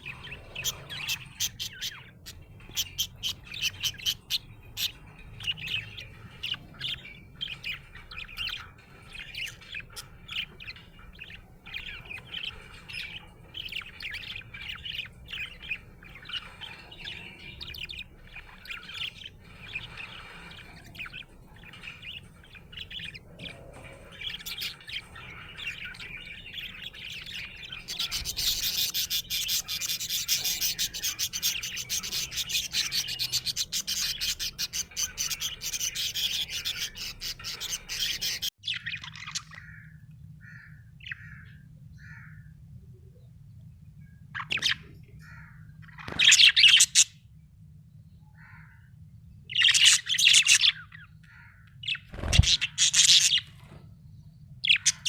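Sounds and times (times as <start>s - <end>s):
budgerigar chirping: 0.0s - 39.8s, 54.6s - 55.0s.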